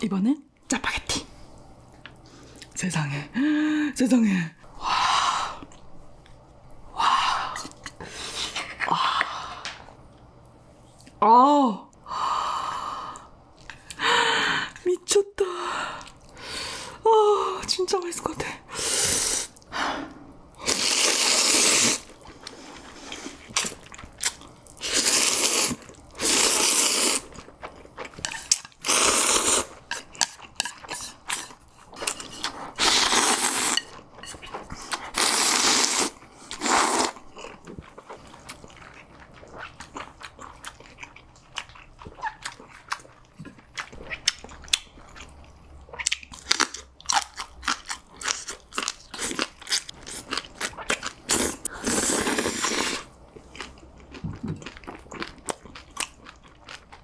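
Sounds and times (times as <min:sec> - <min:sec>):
noodle slurping: 0:20.6 - 0:22.1, 0:24.8 - 0:27.3, 0:28.4 - 0:29.8, 0:32.0 - 0:33.9, 0:34.8 - 0:37.2
chewing with mouth clicks: 0:36.5 - 0:51.8, 0:53.3 - 0:57.0.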